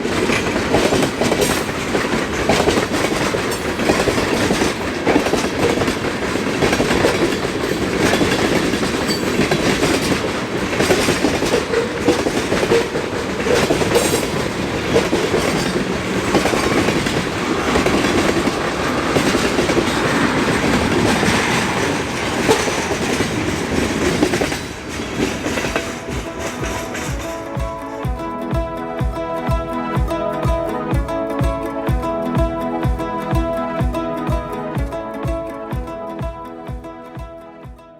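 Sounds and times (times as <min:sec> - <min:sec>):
train wheels clacking on rail joints: 0:00.0 - 0:29.2
freight train rolling past: 0:00.0 - 0:34.3.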